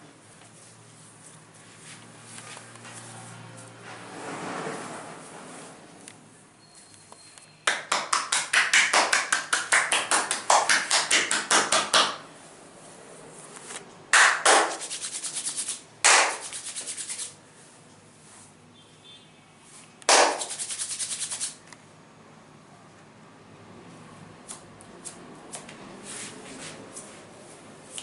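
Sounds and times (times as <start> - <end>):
hands slapping on a back: 7.7 - 12.2, 16.0 - 16.6, 20.1 - 20.6.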